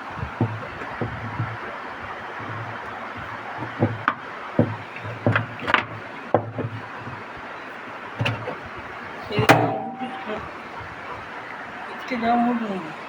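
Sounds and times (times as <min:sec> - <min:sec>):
tools knocking on washing machine: 0:00.0 - 0:07.2, 0:09.3 - 0:10.6
steady low hum: 0:09.2 - 0:10.8.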